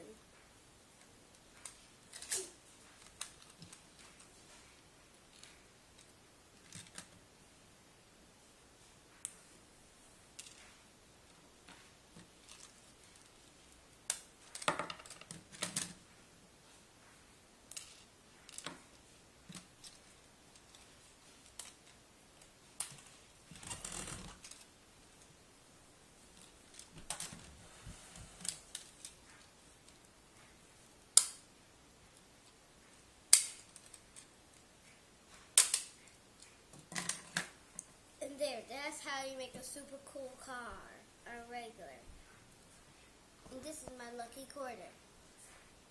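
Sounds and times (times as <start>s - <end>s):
plastic parts clicking and knocking: 5.3s - 7.2s, 14.1s - 16.0s, 35.6s - 36.0s, 36.7s - 37.6s.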